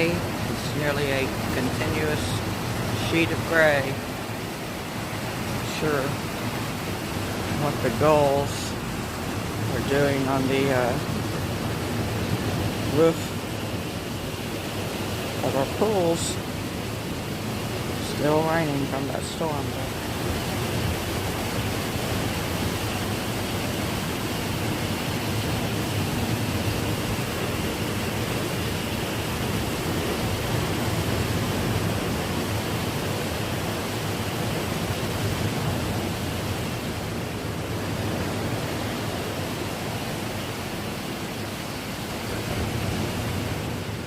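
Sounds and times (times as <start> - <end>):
ocean surf: 0.0 - 44.0
rain: 0.0 - 44.0
wind: 0.0 - 44.0.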